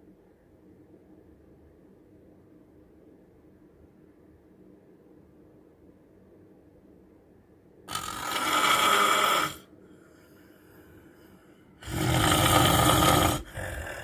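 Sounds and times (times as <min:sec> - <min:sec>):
man snoring: 0:07.9 - 0:09.7, 0:11.8 - 0:14.0.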